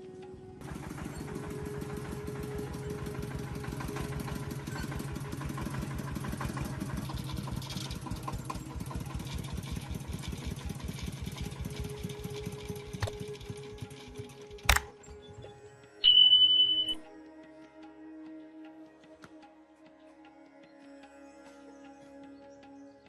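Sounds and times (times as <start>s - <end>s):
diesel engine chugging: 0.1s - 15.4s.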